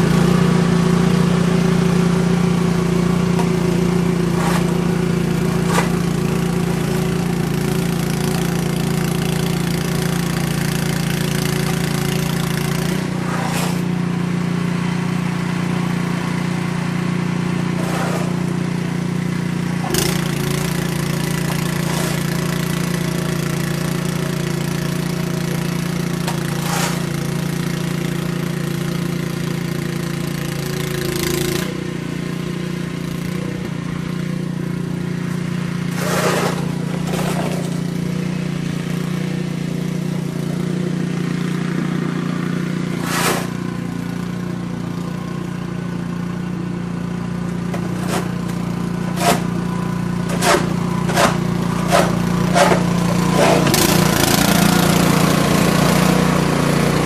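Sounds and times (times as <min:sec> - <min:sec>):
engine running steadily: 0:00.0 - 0:57.0.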